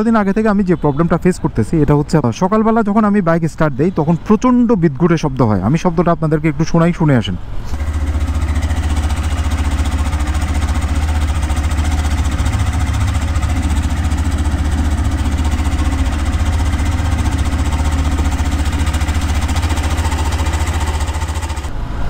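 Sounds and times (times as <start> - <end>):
motorcycle engine running with harsh racket: 7.7 - 21.8.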